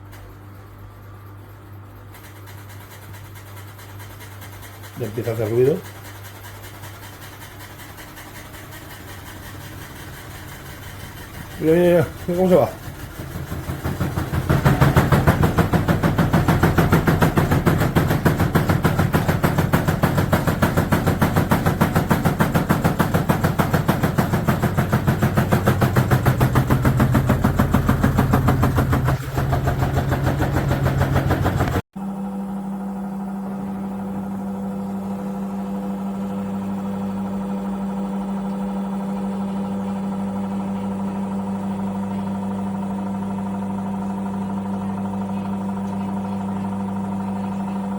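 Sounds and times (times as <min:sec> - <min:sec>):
washing machine rattling: 0:00.0 - 0:31.8
steady machine hum: 0:00.0 - 0:47.9.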